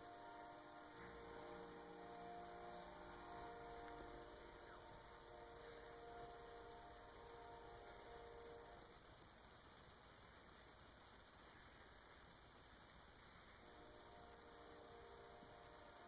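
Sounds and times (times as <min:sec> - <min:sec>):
distant train horn chord: 0:00.0 - 0:09.0, 0:13.6 - 0:16.0.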